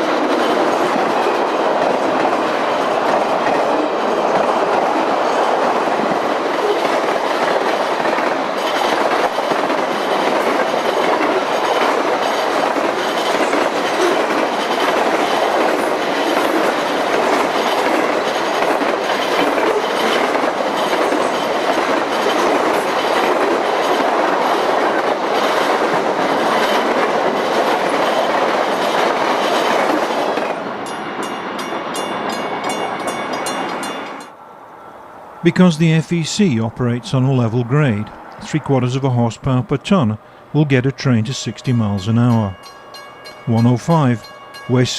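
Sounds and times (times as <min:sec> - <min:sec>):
train cars clickety-clack: 0:00.0 - 0:34.3
freight train wheels rumbling on rail: 0:00.0 - 0:34.4
high repeating sound: 0:35.5 - 0:42.7, 0:43.5 - 0:44.9.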